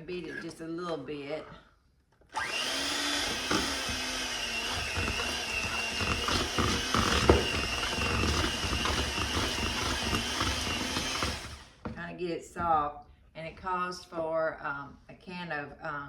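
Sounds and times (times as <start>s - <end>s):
electric mixer motor whine: 2.3s - 12.0s.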